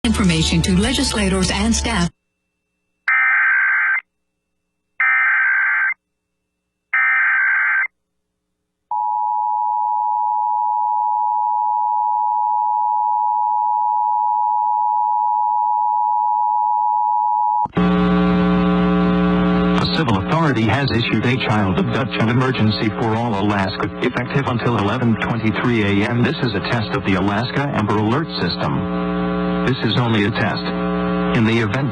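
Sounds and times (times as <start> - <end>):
buzzy tone with overtones: 17.7 - 31.9.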